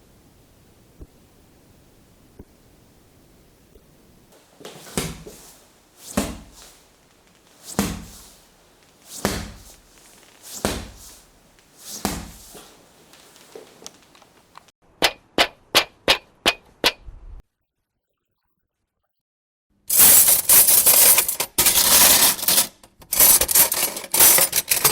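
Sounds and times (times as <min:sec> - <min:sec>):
dull thuds: 0:04.4 - 0:14.5.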